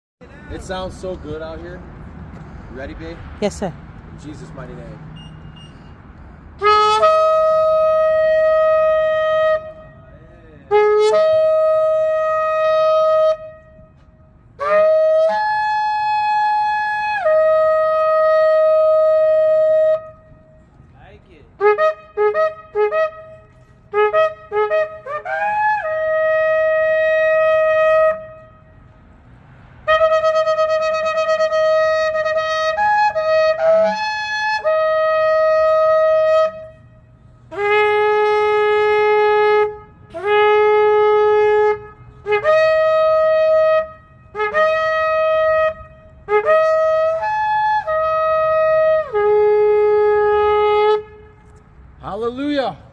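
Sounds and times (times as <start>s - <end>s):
shofar blasts: 6.6s - 10.1s, 10.7s - 20.6s, 21.6s - 28.8s, 29.8s - 51.5s.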